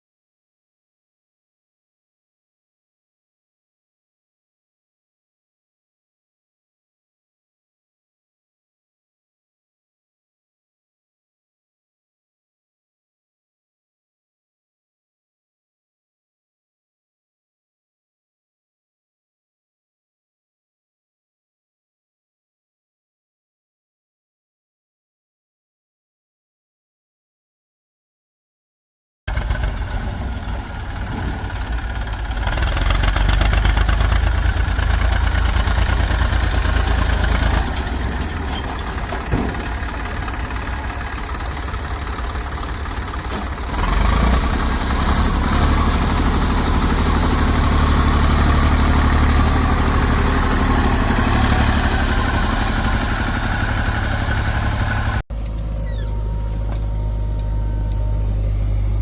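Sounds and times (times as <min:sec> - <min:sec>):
heavy diesel engines running: 0:29.3 - 0:59.0.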